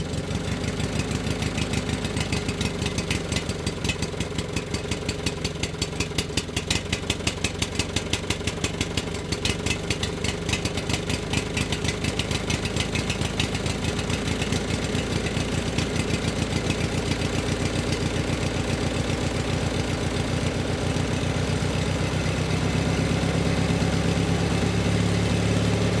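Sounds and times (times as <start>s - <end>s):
engine speeding up: 21.0s - 26.0s.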